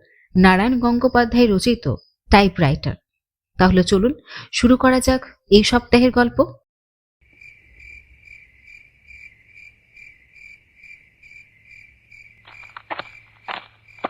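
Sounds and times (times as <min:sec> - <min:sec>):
crickets chirping: 0:07.2 - 0:14.0
footsteps: 0:12.4 - 0:14.0.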